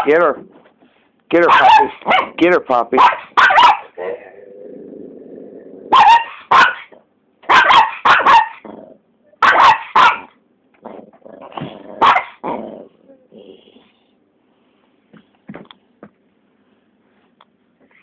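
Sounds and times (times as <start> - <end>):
dogs barking: 1.4 - 2.4, 3.0 - 4.2, 5.9 - 8.7, 9.4 - 10.4, 12.0 - 12.4.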